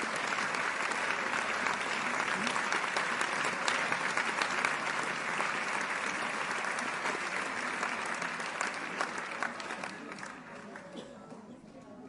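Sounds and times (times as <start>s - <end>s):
audience applauding: 0.0s - 10.8s.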